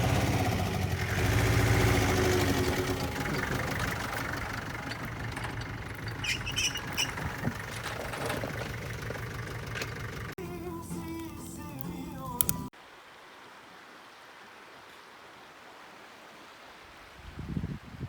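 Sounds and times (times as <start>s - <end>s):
vehicle engine idling: 0.0s - 12.6s.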